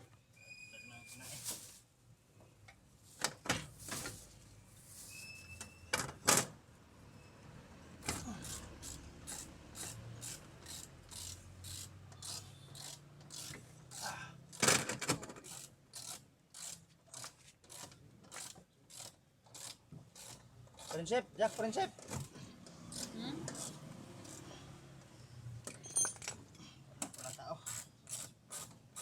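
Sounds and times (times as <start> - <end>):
hand tools clicking and knocking on metal: 25.6 - 29.0.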